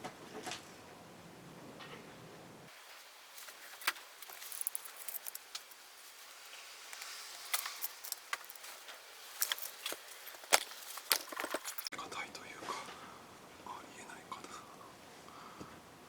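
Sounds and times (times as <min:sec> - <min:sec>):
metal tools clinking and rattling: 0:03.7 - 0:05.8, 0:07.0 - 0:11.9.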